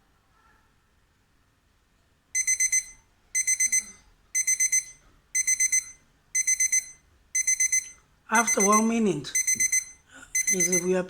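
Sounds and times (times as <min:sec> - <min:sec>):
kitchen timer alarm beeping: 0:02.4 - 0:11.0.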